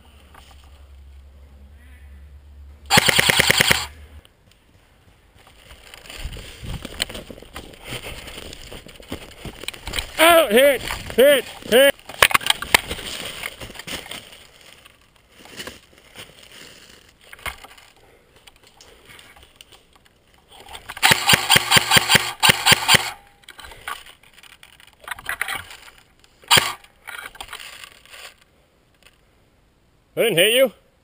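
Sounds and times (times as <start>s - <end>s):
airsoft gun firing: 2.9s - 4.0s, 21.0s - 23.2s, 26.5s - 26.8s.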